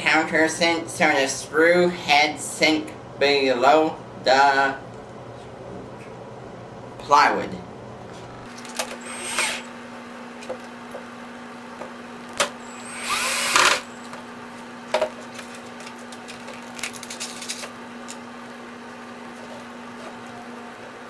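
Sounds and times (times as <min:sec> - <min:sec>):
power drill countersinking plywood: 0:08.9 - 0:09.7, 0:12.6 - 0:14.0.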